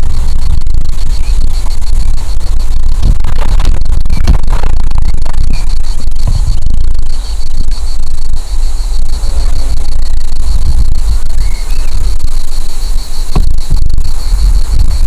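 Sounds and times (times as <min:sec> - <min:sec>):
wind buffeting microphone: 0:06.1 - 0:07.0.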